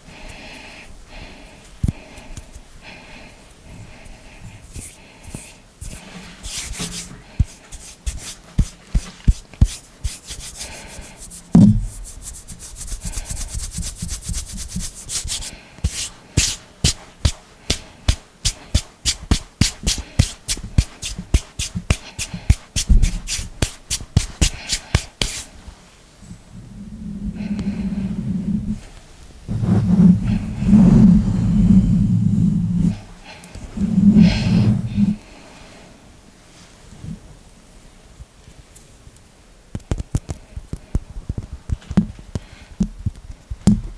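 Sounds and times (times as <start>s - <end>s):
hands rubbing: 4.6s - 25.6s, 29.5s - 31.9s
heavy thump: 11.5s - 12.0s
finger clicks and taps: 15.4s - 25.4s.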